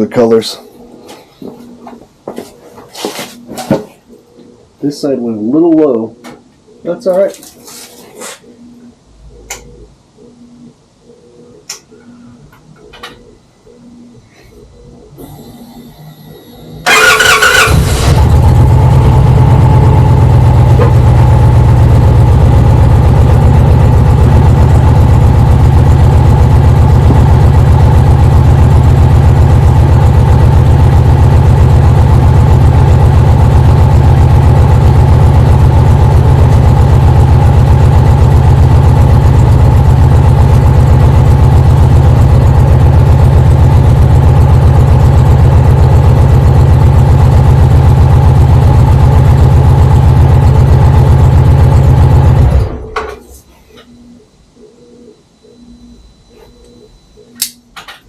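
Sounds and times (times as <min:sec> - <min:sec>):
motorcycle engine idling loudly: 0:16.8 - 0:52.8.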